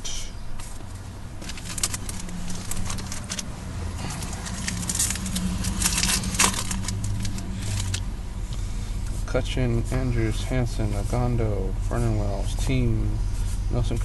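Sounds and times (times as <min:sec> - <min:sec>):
steady low hum: 0:00.0 - 0:14.0
card pack wrapper crinkling: 0:01.4 - 0:08.0.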